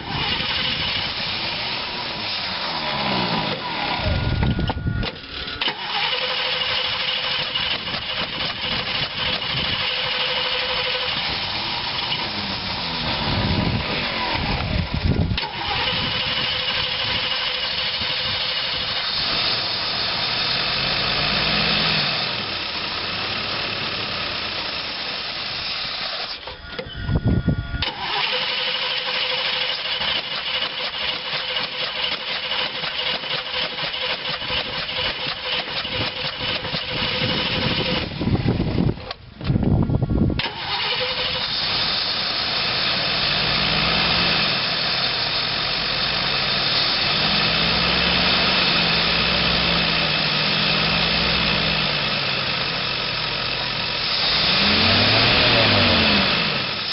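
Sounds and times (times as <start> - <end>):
engine starter cranking: 0.0 - 19.8, 24.4 - 39.6, 40.4 - 45.4
engine short revs: 0.0 - 39.0, 40.4 - 56.9.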